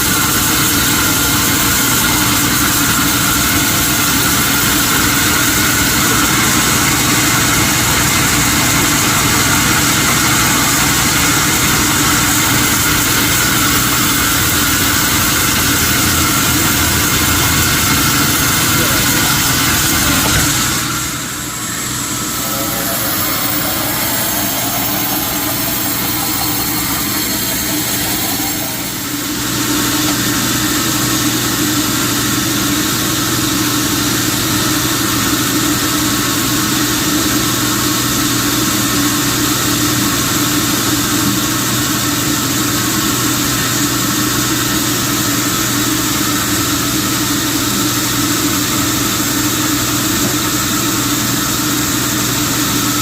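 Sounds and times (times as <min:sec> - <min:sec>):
sawmill machinery drone: 0:00.0 - 0:53.0.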